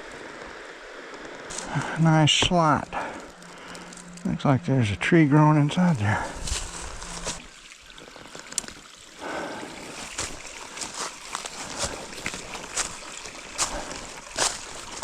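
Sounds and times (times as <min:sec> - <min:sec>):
footsteps on dry leaves: 0:01.4 - 0:04.8, 0:05.8 - 0:08.4, 0:09.8 - 0:15.0.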